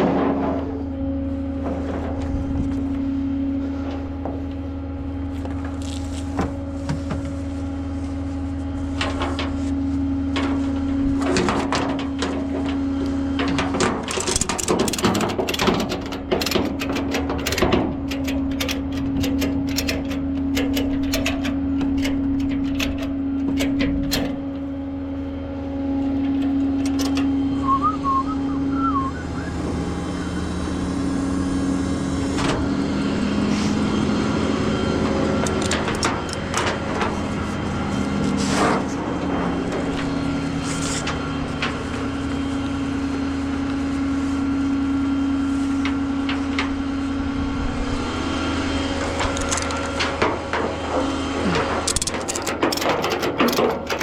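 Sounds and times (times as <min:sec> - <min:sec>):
tow truck engine drone: 0:00.0 - 0:54.0
metallic clanks and clicks: 0:11.2 - 0:24.6, 0:26.1 - 0:27.4, 0:35.4 - 0:37.2, 0:49.0 - 0:54.0.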